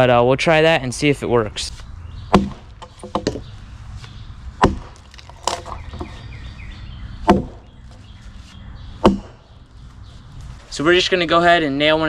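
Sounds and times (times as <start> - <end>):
hand tool striking wood: 2.3 - 3.5, 4.6 - 6.1, 7.3 - 7.6, 9.0 - 9.4.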